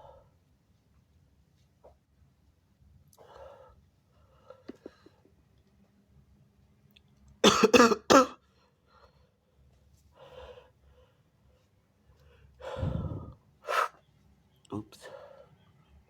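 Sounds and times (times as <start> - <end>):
quiet breaths: 0.0 - 6.0, 8.4 - 16.0
person coughing: 7.4 - 8.4.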